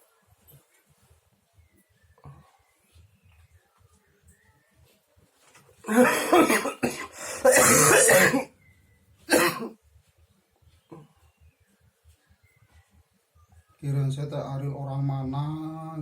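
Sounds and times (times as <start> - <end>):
person coughing: 5.9 - 8.5, 9.3 - 9.8.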